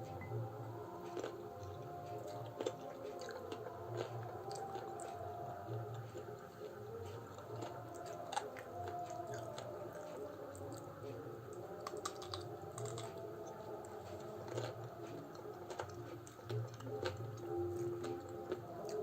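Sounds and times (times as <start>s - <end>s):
person chewing food: 0.1s - 19.0s.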